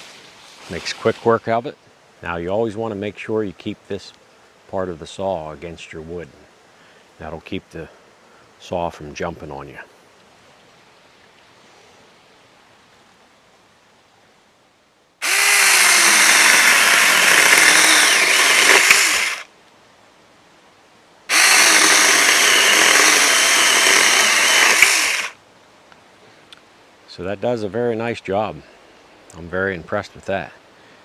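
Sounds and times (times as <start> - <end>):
electric chainsaw cutting wood: 15.2 - 19.5, 21.3 - 25.4.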